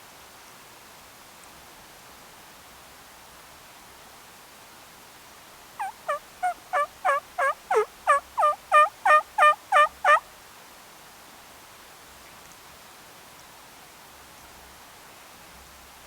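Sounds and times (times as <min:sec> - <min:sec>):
turkey yelps: 0:05.8 - 0:10.2.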